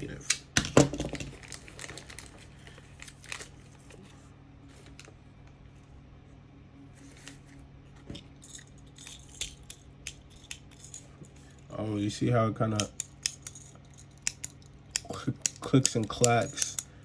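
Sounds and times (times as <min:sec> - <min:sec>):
plastic parts clicking together: 0:12.7 - 0:16.9.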